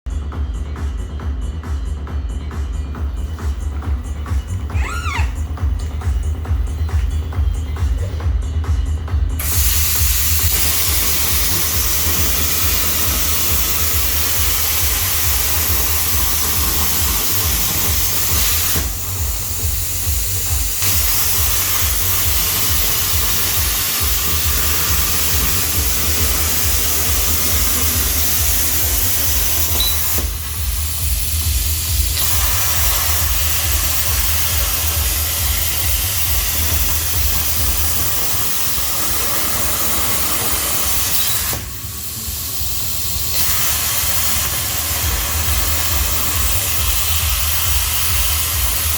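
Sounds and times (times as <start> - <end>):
plasma torch hissing: 9.3 - 48.9.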